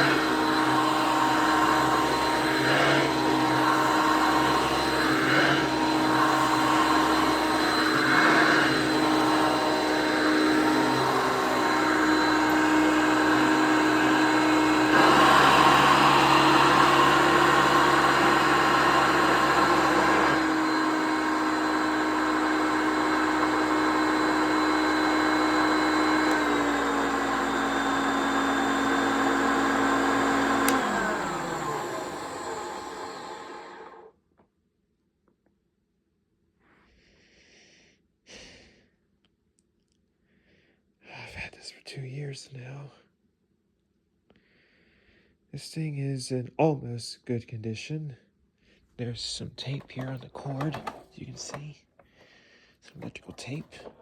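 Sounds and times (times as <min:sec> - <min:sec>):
vacuum cleaner motor whine: 0:00.0 - 0:34.1, 0:49.7 - 0:51.7.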